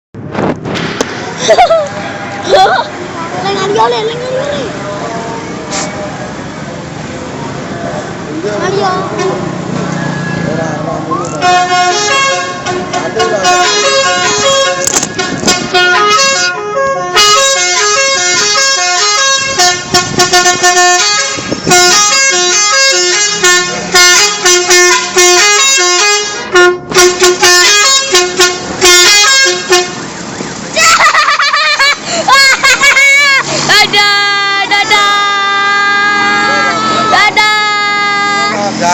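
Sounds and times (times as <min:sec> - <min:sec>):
voices calling out: 0:01.3 - 0:15.3, 0:30.4 - 0:38.9
multi-tone bus horn tune: 0:11.4 - 0:30.4, 0:34.6 - 0:38.7.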